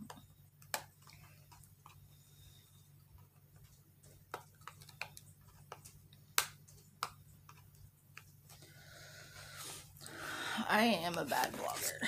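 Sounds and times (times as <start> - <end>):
low steady hum: 0.0 - 12.0
packaging clicks and taps: 3.6 - 8.4.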